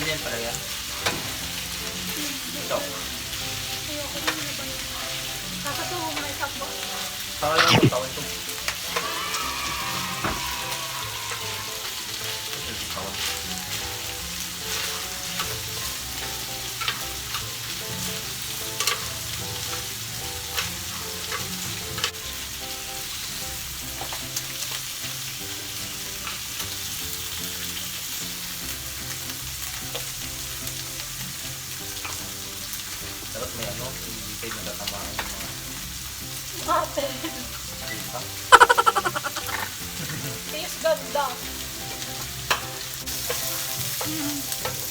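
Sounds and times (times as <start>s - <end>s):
meat sizzling on a grill: 0.0s - 44.9s.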